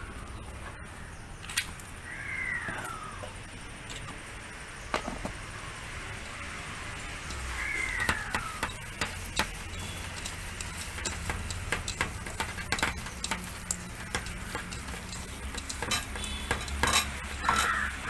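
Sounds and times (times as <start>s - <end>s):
steady low hum: 0.0s - 18.0s
food mixing clicks in bowl: 7.3s - 18.0s.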